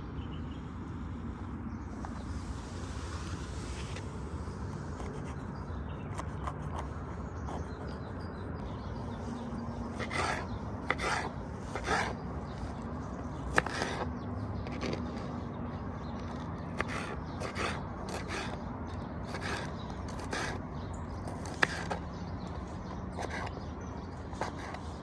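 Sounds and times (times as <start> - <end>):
rasping scrapes: 4.8 - 25.0.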